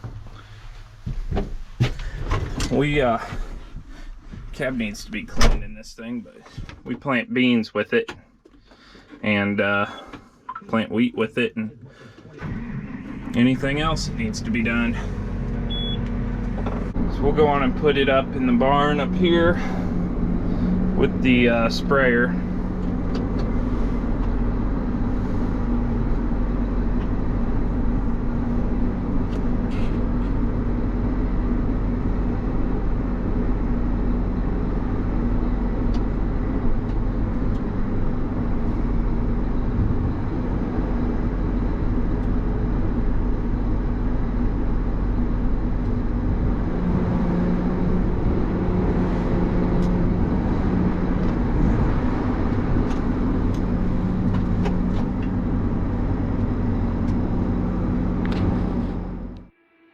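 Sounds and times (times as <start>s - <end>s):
tractor diesel engine running: 11.8s - 59.5s.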